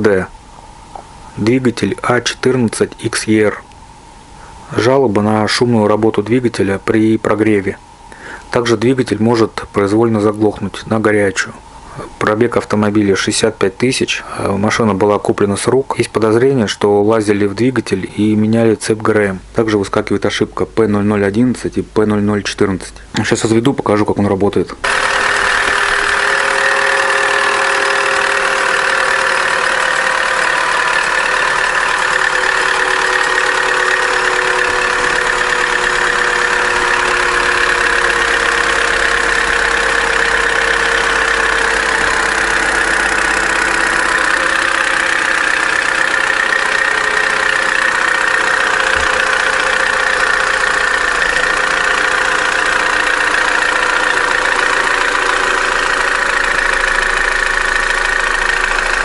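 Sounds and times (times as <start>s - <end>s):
car engine idling with knocking: 24.8s - 59.0s.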